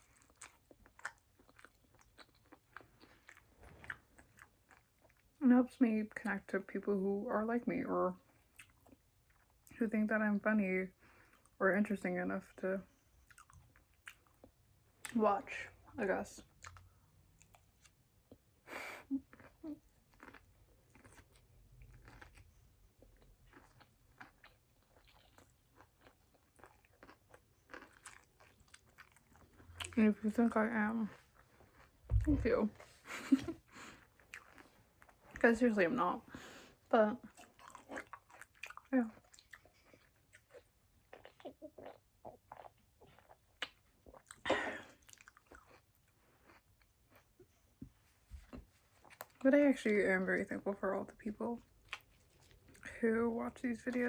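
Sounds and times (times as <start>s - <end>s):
person chewing food: 0.0s - 5.4s, 8.3s - 9.7s, 13.1s - 15.2s, 16.4s - 35.4s, 36.3s - 49.4s, 51.6s - 52.9s.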